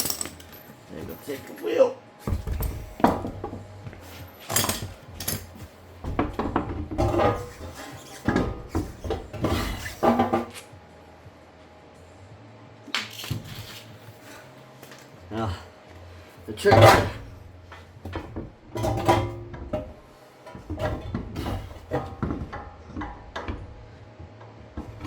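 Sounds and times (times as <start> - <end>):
metallic clanks of wheel and lug nuts: 0.0 - 1.4, 2.3 - 10.6, 16.6 - 25.0.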